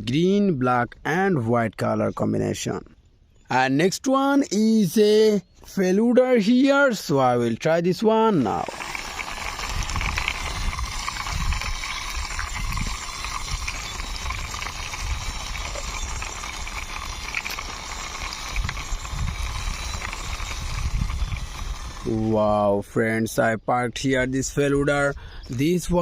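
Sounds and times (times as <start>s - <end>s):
toy car wheels rolling: 8.0s - 22.8s.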